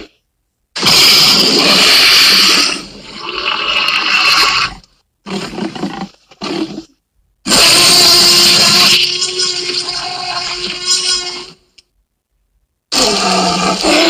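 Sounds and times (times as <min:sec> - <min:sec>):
dinosaur roaring: 0:00.8 - 0:03.5, 0:12.9 - 0:14.0.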